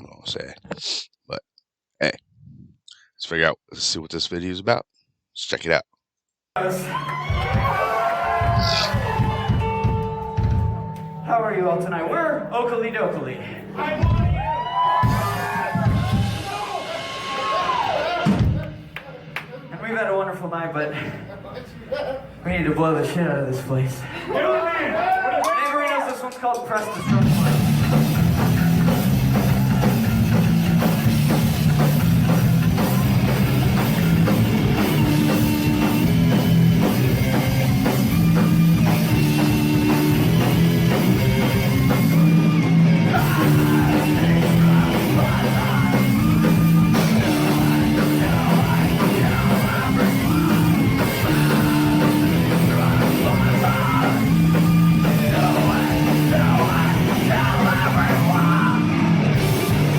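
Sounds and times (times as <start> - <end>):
drum kit: 7.2 - 11.2, 13.8 - 19.4, 26.8 - 59.9
distorted guitars riffing: 7.6 - 11.2, 27.1 - 59.9
person singing: 43.1 - 54.4, 55.0 - 58.9.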